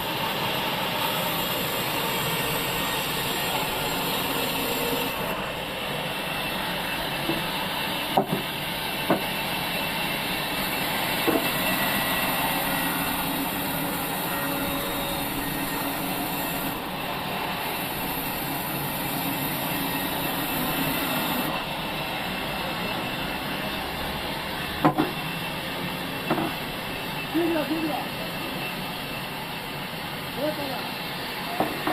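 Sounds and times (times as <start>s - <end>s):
sawmill machinery running: 0.0s - 31.9s
sharp knocks of wood: 8.2s - 8.5s.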